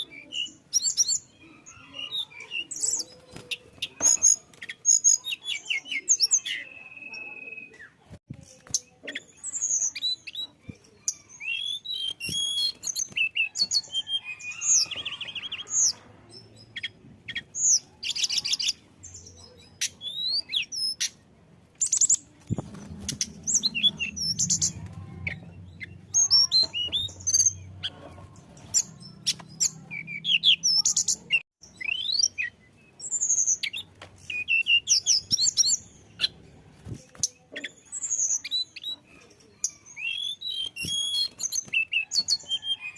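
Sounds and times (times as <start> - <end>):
bird chirps and trills: 21.8 - 42.9.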